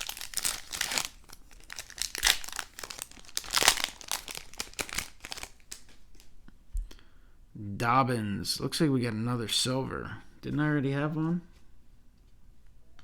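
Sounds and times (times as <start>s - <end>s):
foil wrapper crinkling and tearing: 0.0s - 6.3s.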